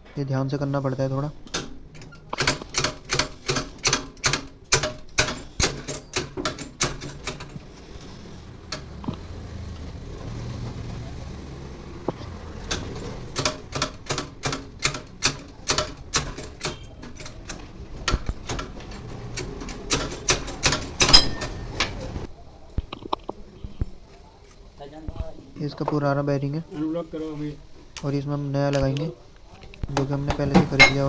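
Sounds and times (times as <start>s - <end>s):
press tool clicking: 1.5s - 7.6s, 12.7s - 21.6s.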